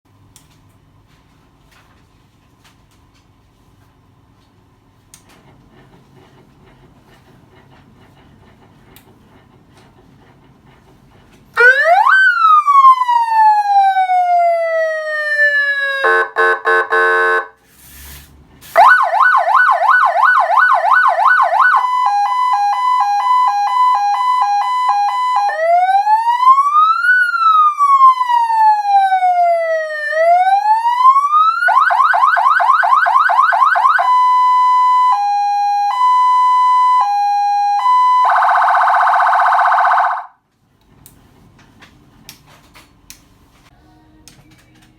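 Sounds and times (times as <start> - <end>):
electronic siren cycling tones: 11.6 - 17.5, 18.8 - 40.4
vehicle horn blast: 16.0 - 17.6.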